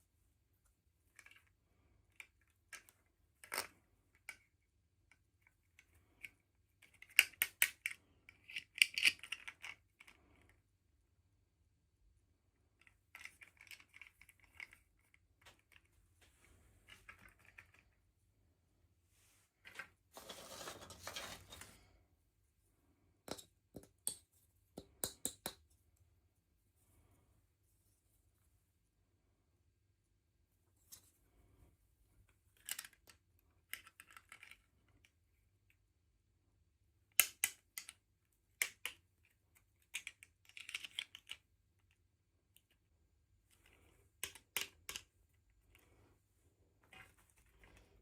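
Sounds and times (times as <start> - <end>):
plastic pieces clicking: 6.8 - 10.2, 39.8 - 41.9.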